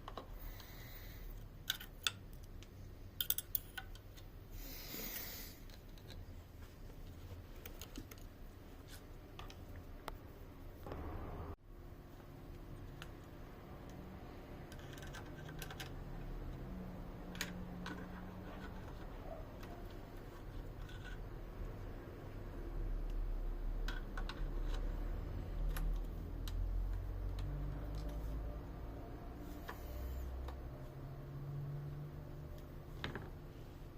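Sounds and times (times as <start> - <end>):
low hum: 10.6 - 12.0.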